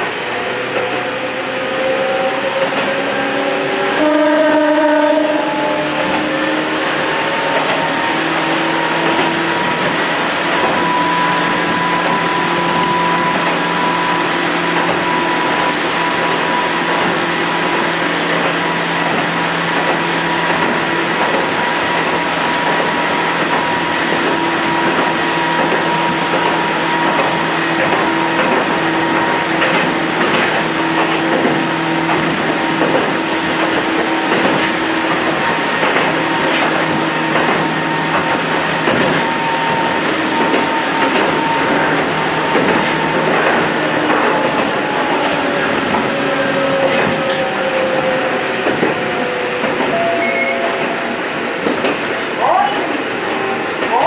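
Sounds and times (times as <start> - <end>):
train rail and running noise: 0.0 - 54.0.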